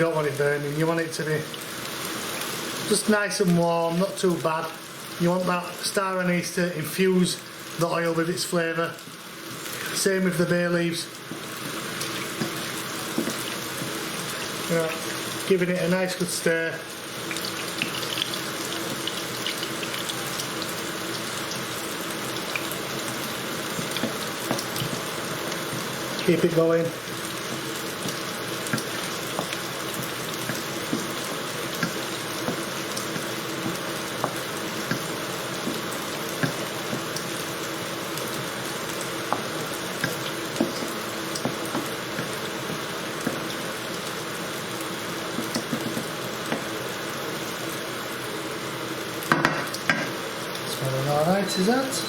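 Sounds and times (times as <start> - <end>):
chicken sizzling in oil: 0.0 - 52.0.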